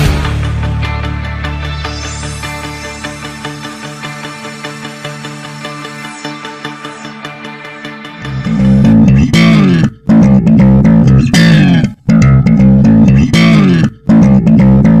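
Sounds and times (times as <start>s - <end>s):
cymbal crash: 0.0s - 2.7s
distorted guitar and bass riff: 0.0s - 15.0s.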